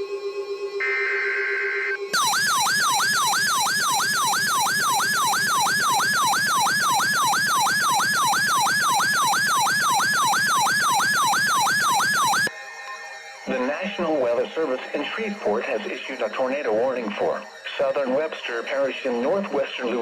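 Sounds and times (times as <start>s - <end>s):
electronic wailing siren: 0.0s - 12.5s.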